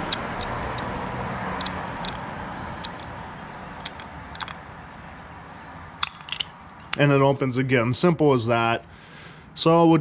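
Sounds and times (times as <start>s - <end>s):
combination dials clicking: 0.0s - 1.0s, 1.6s - 2.2s, 3.8s - 4.6s.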